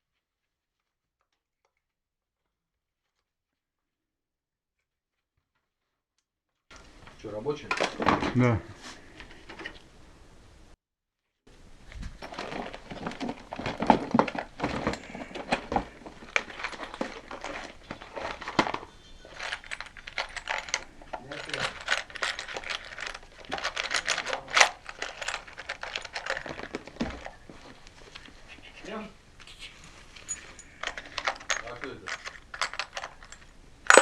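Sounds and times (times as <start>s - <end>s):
objects clicking and rattling: 11.9s - 28.4s, 30.1s - 34.0s.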